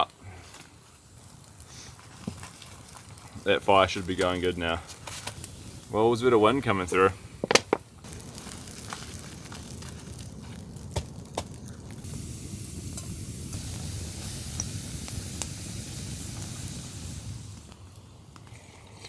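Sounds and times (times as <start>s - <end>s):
campfire crackling and hissing: 0.0s - 19.0s
fire pops: 0.0s - 19.0s
wind gusts: 3.3s - 18.3s.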